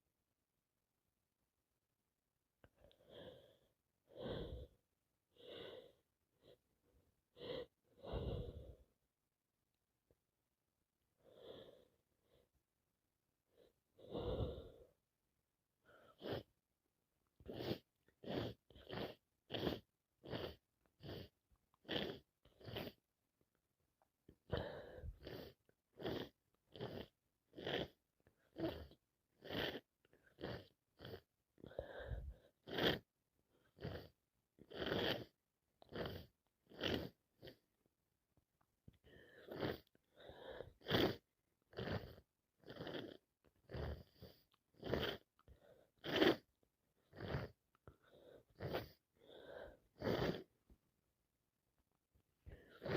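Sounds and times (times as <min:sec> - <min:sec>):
catching breaths: 0:07.4 - 0:08.9, 0:31.6 - 0:32.9.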